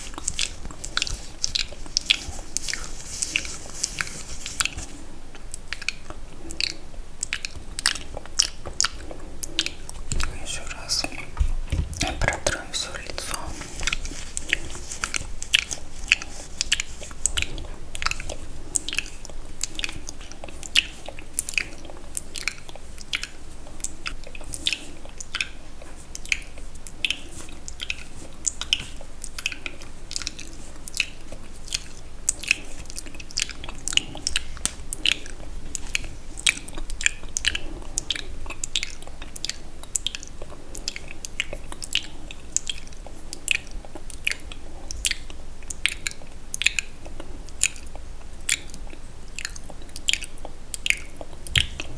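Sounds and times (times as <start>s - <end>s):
wet mouth clicks and smacks: 0.1s - 51.9s.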